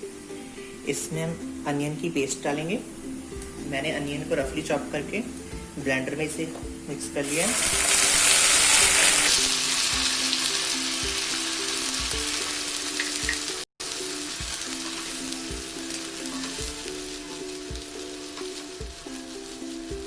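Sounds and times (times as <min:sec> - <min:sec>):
background music: 0:00.0 - 0:20.0
paste sizzling in hot oil: 0:07.2 - 0:20.0.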